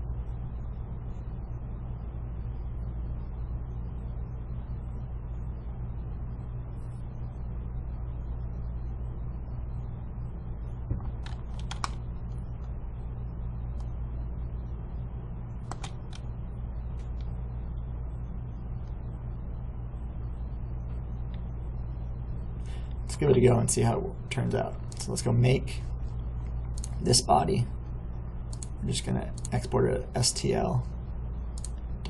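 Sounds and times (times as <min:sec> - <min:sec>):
steady low hum: 0:00.0 - 0:32.0
keyboard and mouse clicks: 0:10.9 - 0:12.0, 0:15.6 - 0:16.3, 0:26.7 - 0:27.0, 0:28.5 - 0:28.7, 0:29.3 - 0:29.6, 0:31.5 - 0:31.8.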